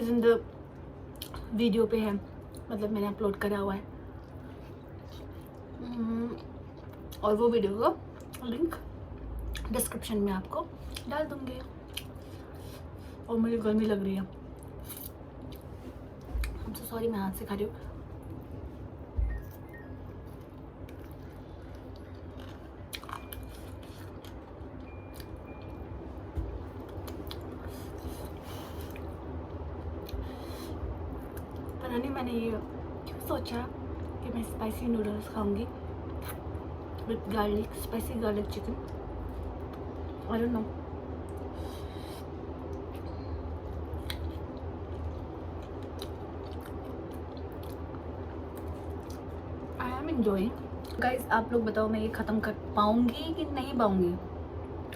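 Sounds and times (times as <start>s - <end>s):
low steady hum: 0.0s - 54.9s
person chewing food: 4.2s - 7.2s, 19.2s - 25.9s, 26.5s - 31.8s, 41.3s - 49.8s.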